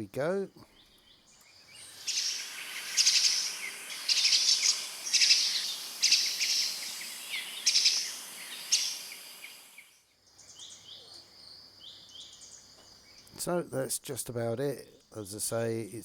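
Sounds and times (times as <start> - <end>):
bird chattering calls: 1.7 - 9.9.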